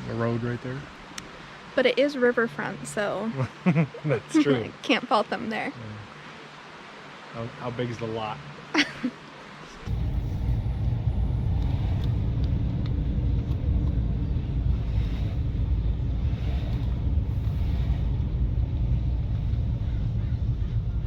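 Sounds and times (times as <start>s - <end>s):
car road and engine rumble: 5.8s - 21.0s.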